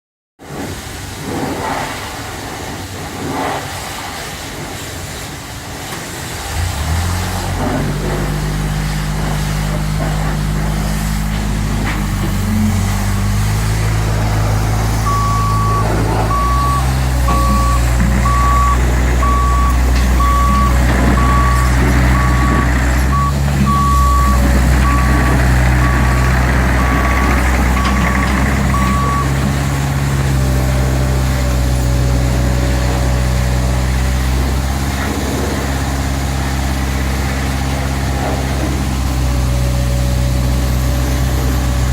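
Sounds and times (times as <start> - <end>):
diesel engine running: 6.2 - 41.9
travel alarm beeping: 15.0 - 29.6.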